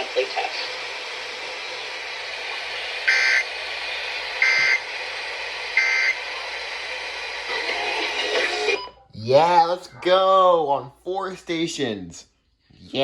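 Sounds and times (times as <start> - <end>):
radio hiss: 0.0 - 8.8.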